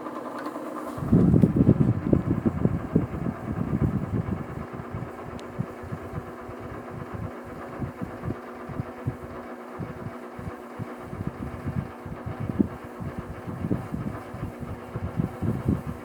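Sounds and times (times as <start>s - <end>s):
table fan motor hum: 0.0s - 16.0s
low airflow buffeting: 0.9s - 16.0s.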